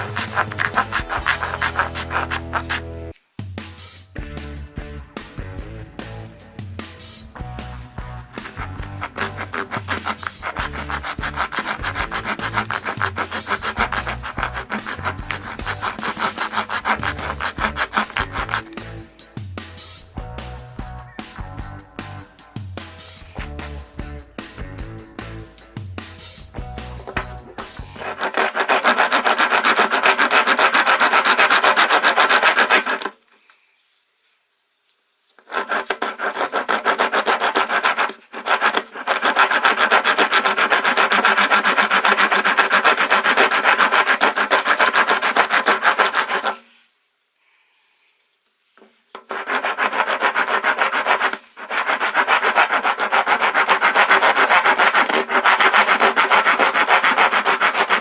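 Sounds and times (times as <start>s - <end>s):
wood rasp filing wood: 0.0s - 2.9s, 8.1s - 18.9s, 26.9s - 33.2s, 35.4s - 46.7s, 49.2s - 58.0s.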